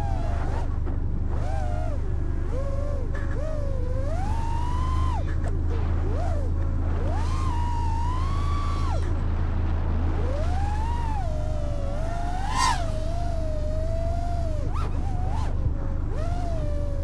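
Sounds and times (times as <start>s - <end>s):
quadcopter motors whining: 0.0s - 17.0s.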